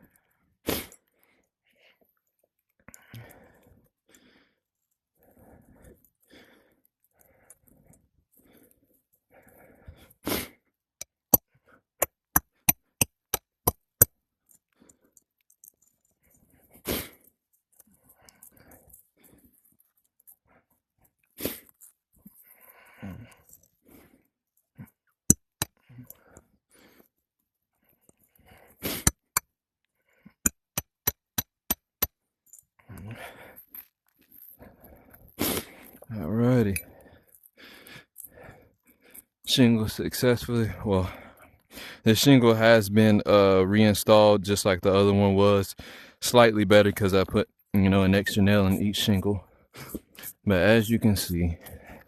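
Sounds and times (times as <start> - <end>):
hammer striking nails: 30.4 - 32.1.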